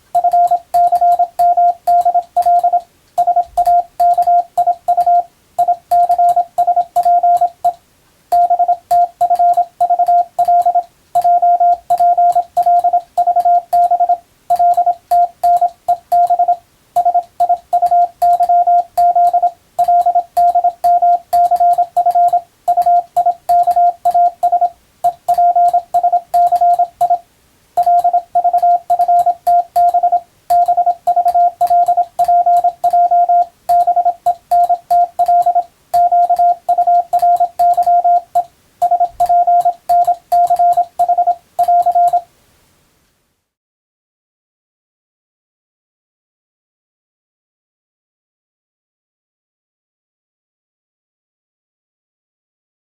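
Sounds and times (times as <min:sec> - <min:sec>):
morse code tone: 0:00.0 - 0:27.2, 0:27.8 - 0:42.3.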